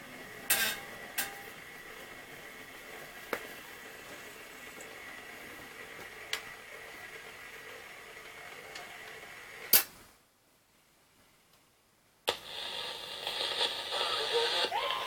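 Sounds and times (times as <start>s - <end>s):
faint steady whine: 0.0s - 15.0s
vinyl surface hiss: 0.0s - 15.0s
record pops and clicks: 12.3s - 15.0s.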